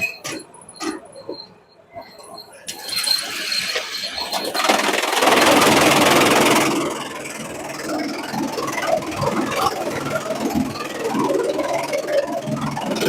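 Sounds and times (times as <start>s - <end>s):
shredder grinding and chipping: 2.7s - 13.0s
shredder machine humming: 4.3s - 13.0s.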